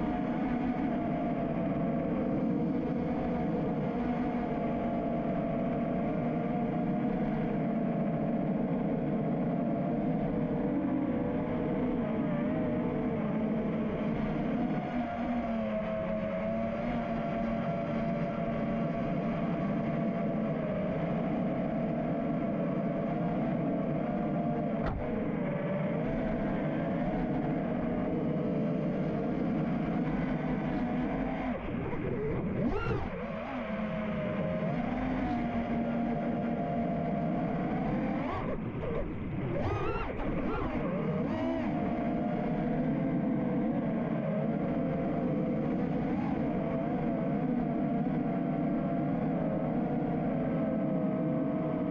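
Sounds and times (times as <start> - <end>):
drone motors whining: 19.2 - 51.3
quadcopter motors buzzing: 30.5 - 43.5.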